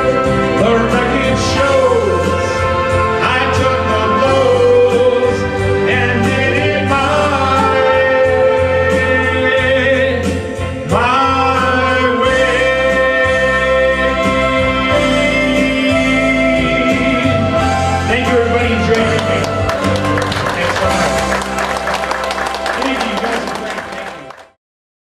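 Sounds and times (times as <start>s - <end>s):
orchestral band playing: 0.0s - 24.5s.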